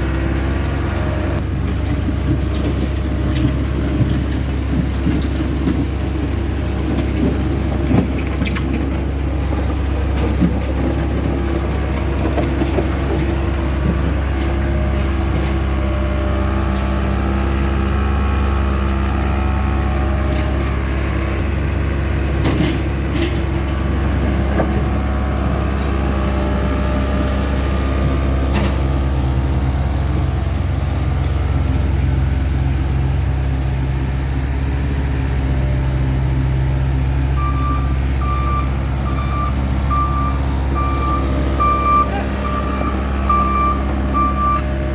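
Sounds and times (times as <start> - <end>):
loader diesel engine running: 0.0 - 44.9.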